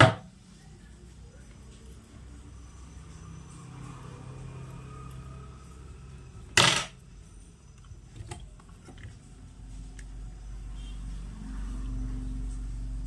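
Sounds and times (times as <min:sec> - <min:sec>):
metal tool clattering on workbench: 0:06.6 - 0:07.0.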